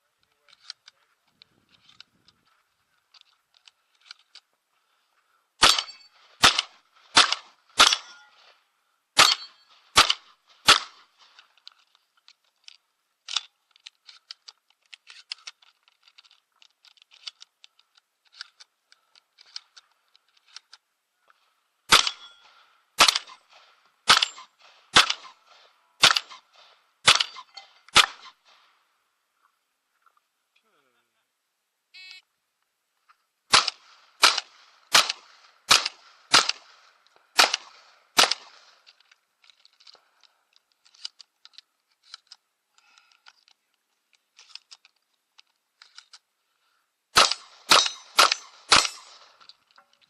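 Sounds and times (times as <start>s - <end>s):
shotgun shots: 5.6s - 8.5s, 9.2s - 11.2s, 21.9s - 28.6s, 33.5s - 38.8s, 47.1s - 49.4s.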